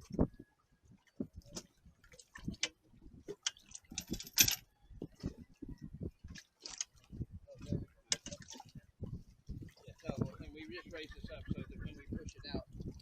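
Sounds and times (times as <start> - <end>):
clattering rattle: 4.0 - 4.6.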